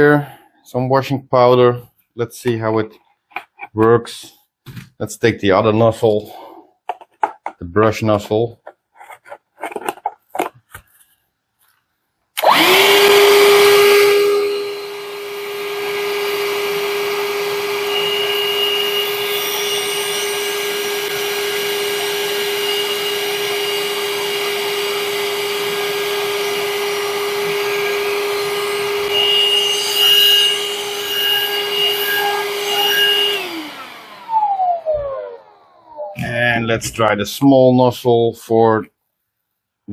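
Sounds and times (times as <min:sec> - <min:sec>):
handheld vacuum cleaner whining: 0:12.4 - 0:36.3.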